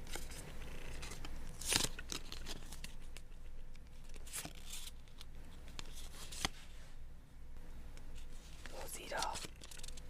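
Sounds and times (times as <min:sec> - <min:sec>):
trading cards flipping: 0:00.0 - 0:03.3, 0:04.0 - 0:06.6, 0:08.2 - 0:10.0.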